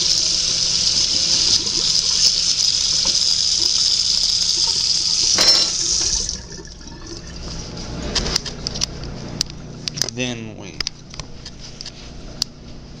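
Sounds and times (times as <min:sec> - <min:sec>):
tap water running: 0:00.0 - 0:09.7.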